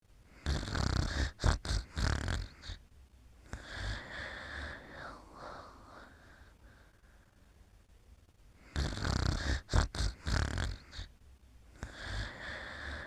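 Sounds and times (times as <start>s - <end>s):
rattling snore: 0.4s - 2.8s, 8.7s - 11.1s.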